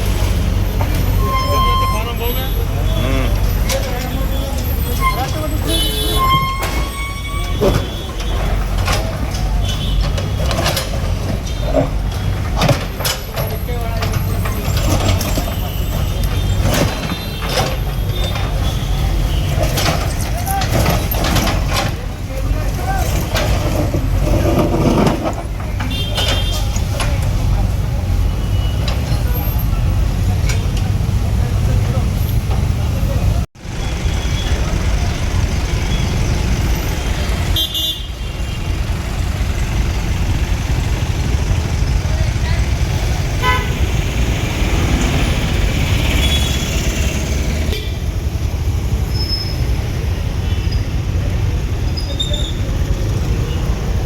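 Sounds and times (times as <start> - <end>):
heavy diesel machinery rumbling: 0.0 - 54.0
short high-pitched vehicle horn: 5.0 - 8.0.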